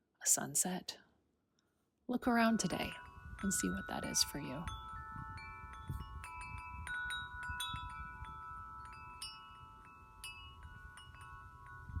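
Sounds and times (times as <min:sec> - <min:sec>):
wind chimes ringing: 0:02.3 - 0:12.0.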